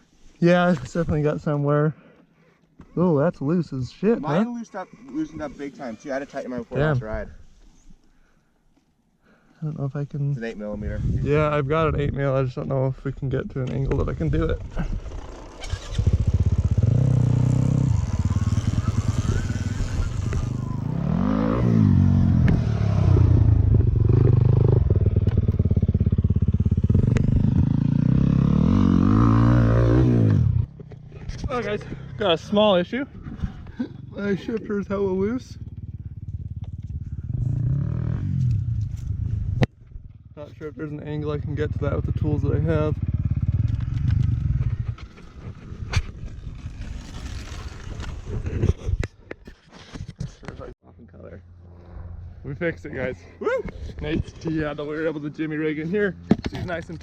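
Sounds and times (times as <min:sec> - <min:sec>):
dirt bike engine idling and revving: 0:13.7 - 0:48.6, 0:51.4 - 0:57.0.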